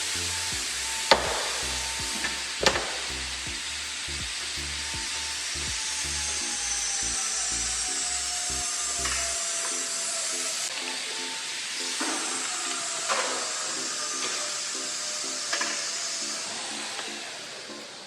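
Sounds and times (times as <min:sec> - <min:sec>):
music with repeating beat: 0:00.0 - 0:08.1
steady hissing noise: 0:00.0 - 0:18.0.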